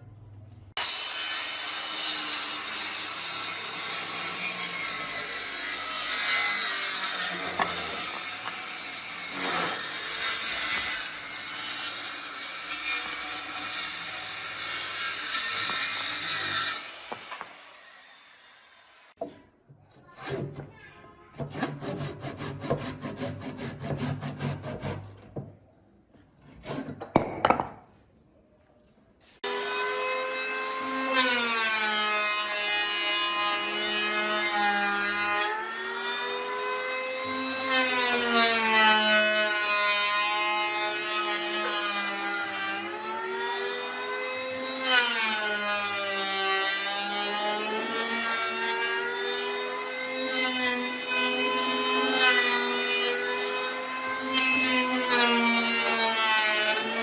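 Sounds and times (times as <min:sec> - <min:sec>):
wood scraping strokes: 0:06.1 - 0:10.9.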